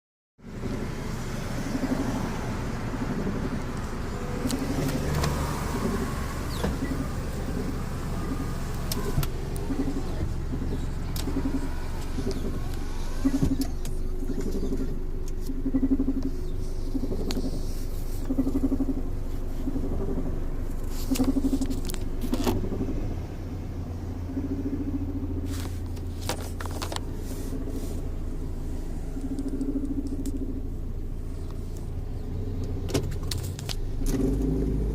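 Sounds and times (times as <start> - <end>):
car engine running unevenly: 0.4 - 34.9
sharp clicks: 3.2 - 19.1.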